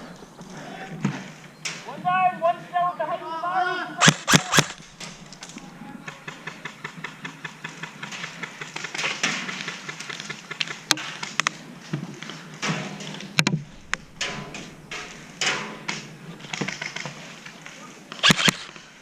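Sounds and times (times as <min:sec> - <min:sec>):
airsoft guns firing: 0:04.0 - 0:11.4, 0:18.2 - 0:18.9.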